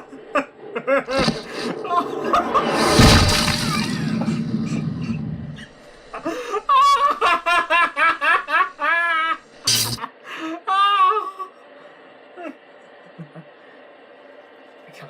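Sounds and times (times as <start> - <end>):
short sharp noise: 0.0 - 5.9, 9.7 - 10.0.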